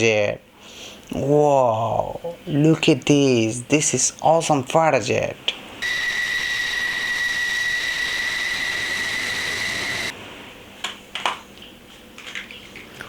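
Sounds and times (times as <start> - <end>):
toy jet engine whine: 5.8 - 10.2.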